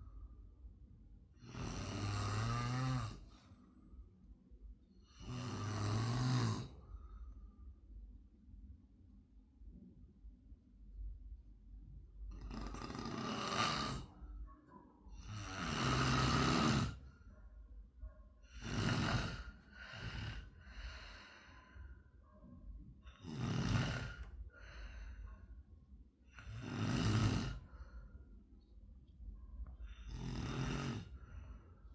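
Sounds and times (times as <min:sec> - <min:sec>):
faint breaths: 0:00.0 - 0:08.0, 0:12.2 - 0:31.9
person snoring: 0:01.4 - 0:03.3, 0:05.1 - 0:06.8, 0:12.3 - 0:14.2, 0:15.2 - 0:17.0, 0:18.5 - 0:21.3, 0:23.1 - 0:24.3, 0:26.4 - 0:27.7, 0:29.9 - 0:31.2.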